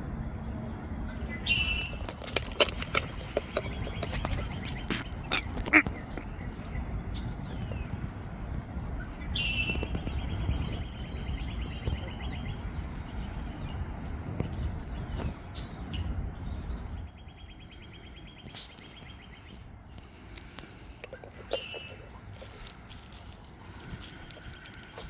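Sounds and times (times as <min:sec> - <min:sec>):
bird chirps: 0:01.1 - 0:02.2, 0:20.8 - 0:22.8
songbird trilling: 0:01.2 - 0:07.4, 0:21.1 - 0:22.8.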